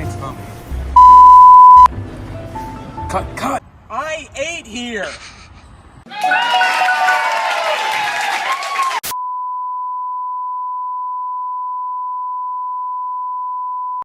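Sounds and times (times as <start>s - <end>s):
steady high beep tone: 1.0s - 1.9s.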